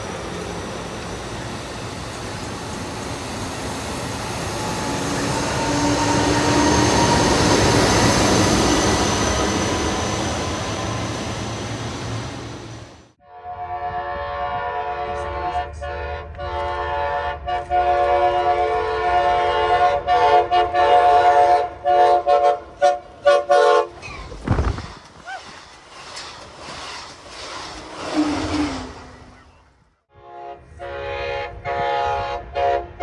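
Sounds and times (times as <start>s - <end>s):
locomotive air horn: 13.2s - 24.1s, 30.1s - 33.0s
low thud: 24.3s - 25.1s.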